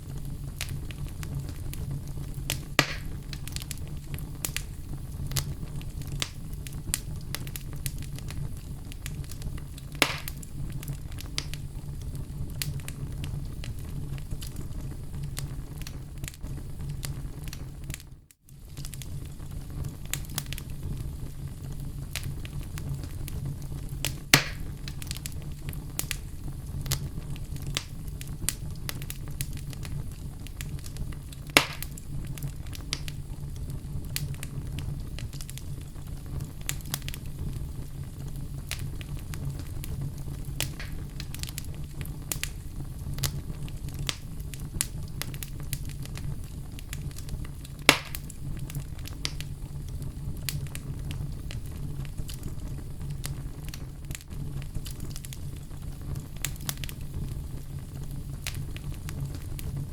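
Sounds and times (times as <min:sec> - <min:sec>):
logs burning in a fireplace: 0:00.0 - 0:59.9.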